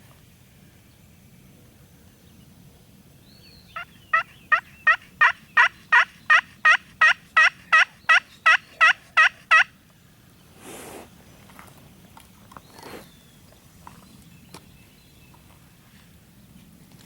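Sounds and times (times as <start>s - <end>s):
wild turkey yelping: 3.8s - 9.7s.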